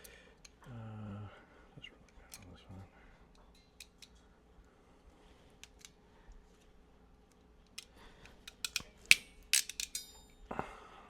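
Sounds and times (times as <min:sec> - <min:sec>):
hand tools snapping wires: 0:07.7 - 0:10.3.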